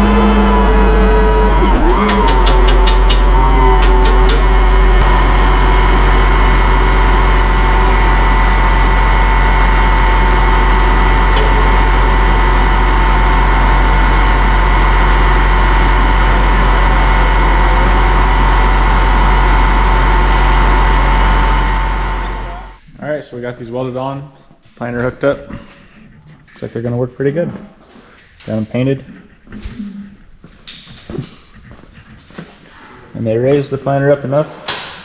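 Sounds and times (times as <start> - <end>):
tractor engine droning: 0.0 - 22.8.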